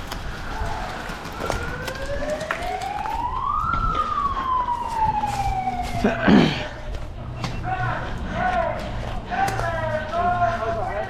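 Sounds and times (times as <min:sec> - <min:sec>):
siren winding up and down: 0:01.3 - 0:06.3.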